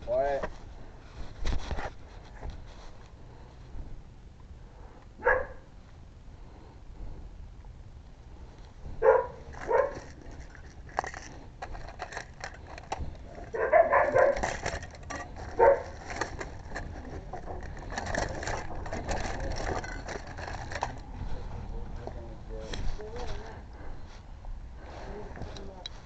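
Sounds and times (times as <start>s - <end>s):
dogs barking: 5.2s - 5.7s, 9.0s - 10.1s, 13.5s - 14.5s, 15.4s - 16.0s.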